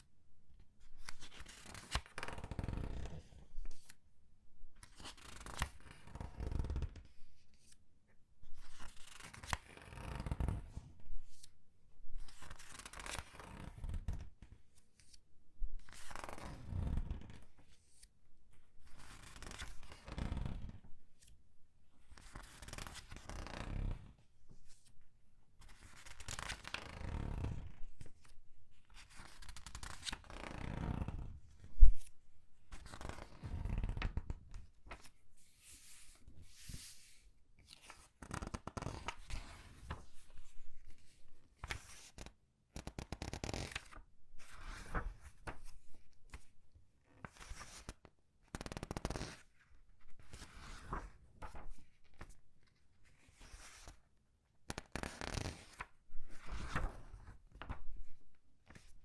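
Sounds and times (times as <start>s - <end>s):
paper pages rustling: 32.7s - 42.3s, 43.5s - 46.5s, 50.3s - 52.4s, 54.9s - 58.0s.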